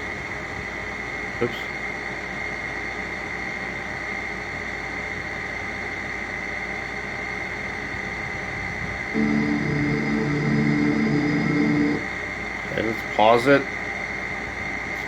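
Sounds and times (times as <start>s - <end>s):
low hum: 9.2s - 12.1s
high-pitched whine: 9.2s - 12.2s.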